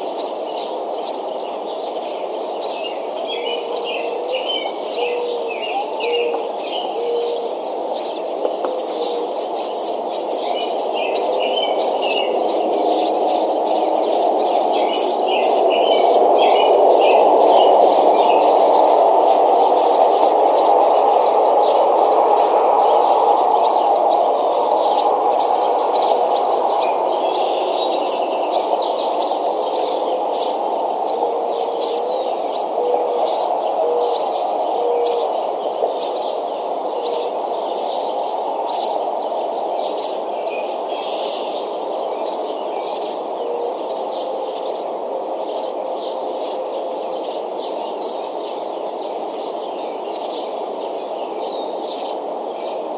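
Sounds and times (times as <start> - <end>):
birds chirping: 0.0 - 52.9
steady rushing noise: 9.3 - 31.6.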